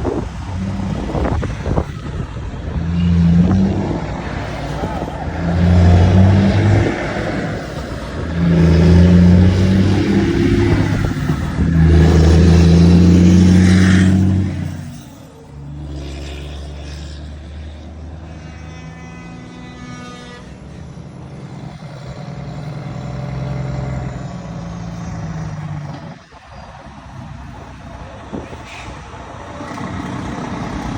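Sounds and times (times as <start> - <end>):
diesel truck engine running: 0.0 - 19.2.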